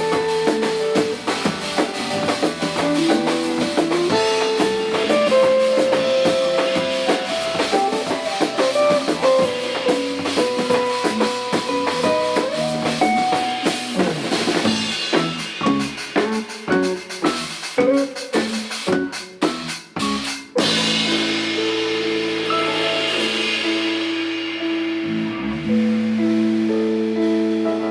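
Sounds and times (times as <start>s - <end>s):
guitar melody: 0.0s - 19.2s, 25.0s - 27.9s
bass: 0.0s - 27.9s
drum kit: 0.0s - 27.9s.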